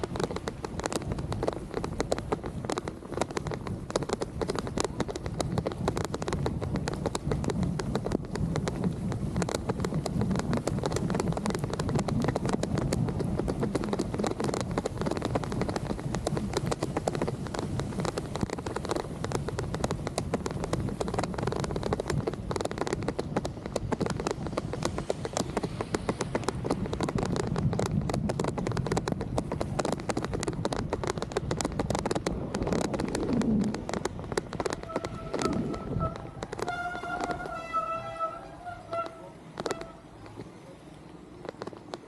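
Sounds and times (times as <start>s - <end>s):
rain ticking: 0.0s - 42.0s
wind noise on camera: 0.0s - 42.0s.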